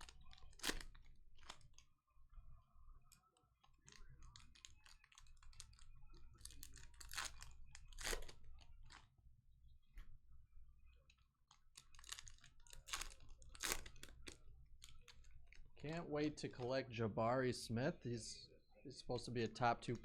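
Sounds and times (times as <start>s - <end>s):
cards and wrappers rustling: 0.0s - 1.8s, 3.6s - 9.0s, 11.5s - 15.8s.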